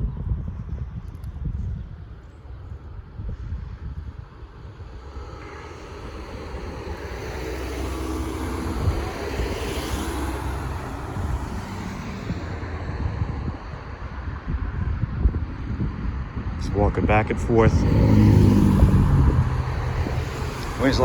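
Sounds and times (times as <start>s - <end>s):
low wind rumble: 0.0s - 21.0s
car passing: 4.3s - 14.5s, 16.1s - 21.0s.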